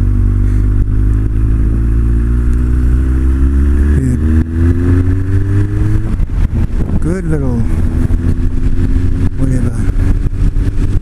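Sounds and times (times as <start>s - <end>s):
motorcycle engine accelerating: 0.0s - 11.0s
wind rumble on microphone: 0.0s - 11.0s.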